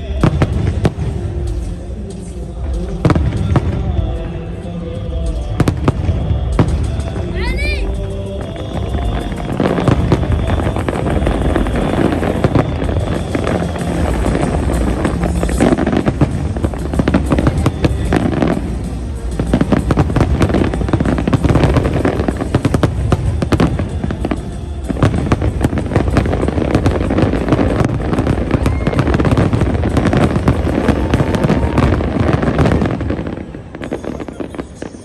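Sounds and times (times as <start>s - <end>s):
fireworks bangs and crackles: 0.0s - 35.0s
music playing: 0.0s - 35.0s.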